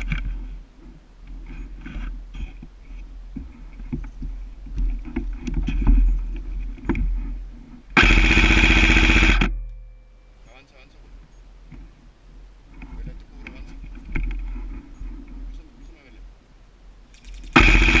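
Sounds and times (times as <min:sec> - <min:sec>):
rustling and light knocks: 0:00.0 - 0:08.0, 0:11.0 - 0:12.0, 0:12.7 - 0:15.7
airsoft rifle full-auto burst: 0:08.0 - 0:09.5, 0:17.5 - 0:18.0.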